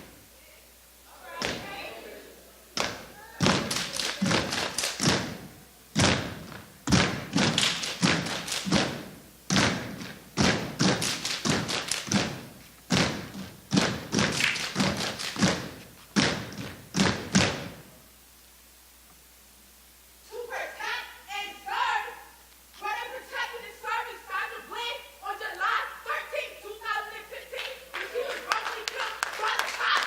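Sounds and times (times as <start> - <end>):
hand claps: 2.8 - 5.4, 6.0 - 17.7, 27.6 - 30.0
unison foot stomps: 2.8 - 17.9.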